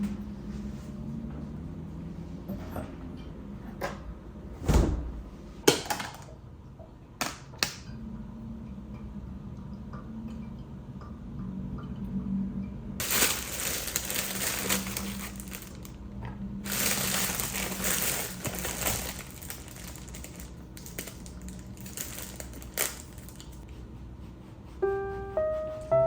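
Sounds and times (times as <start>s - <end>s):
low steady hum: 0.0s - 26.0s
crinkling and rustling: 13.0s - 16.0s, 16.6s - 23.6s.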